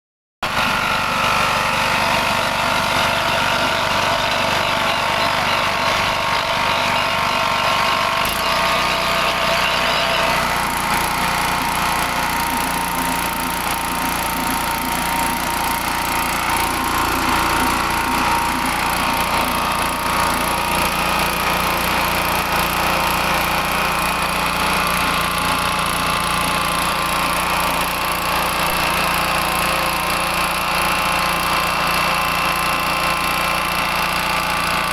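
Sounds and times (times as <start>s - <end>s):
pellet mill mechanical drone: 0.4s - 34.9s.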